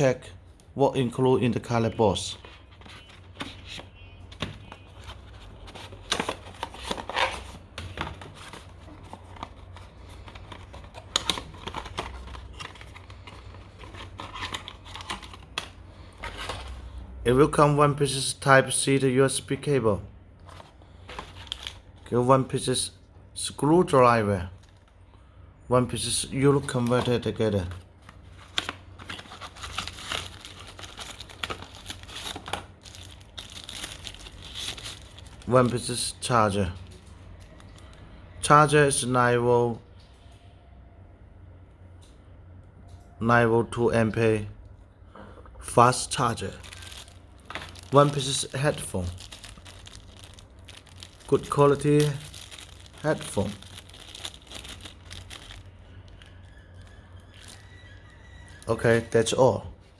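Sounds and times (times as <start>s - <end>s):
packaging rustling and clicking: 2.4s - 17.0s, 20.4s - 22.0s, 26.6s - 35.8s, 46.3s - 59.1s
low steady hum: 19.5s - 59.9s.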